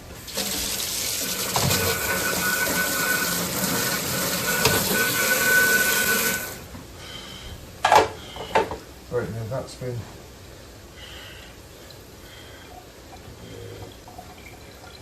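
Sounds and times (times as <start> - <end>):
tap running water into sink: 0.3 - 6.6.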